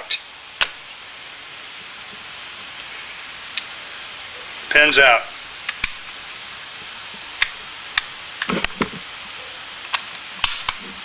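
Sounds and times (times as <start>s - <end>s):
pistol metallic clicks: 5.7s - 6.0s, 9.9s - 10.8s.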